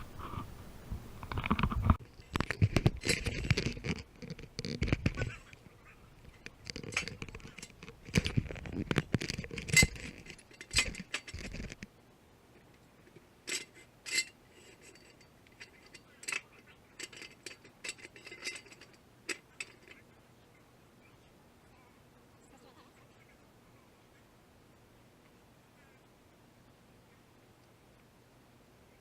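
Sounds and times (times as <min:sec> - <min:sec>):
tools clinking against metal: 0:13.4 - 0:20.0.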